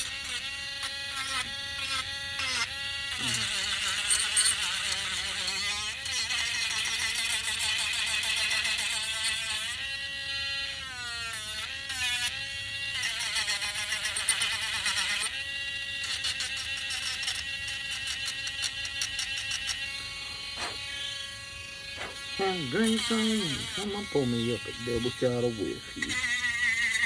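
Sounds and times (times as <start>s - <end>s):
rasp of sanding wood: 16.7s - 20.9s, 22.0s - 27.0s
bench sander motor whine: 18.6s - 27.0s.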